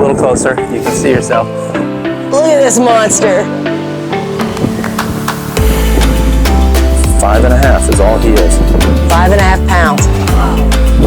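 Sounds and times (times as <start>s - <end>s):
deep bass line: 0.8s - 11.0s
music with steady beat: 0.8s - 11.0s.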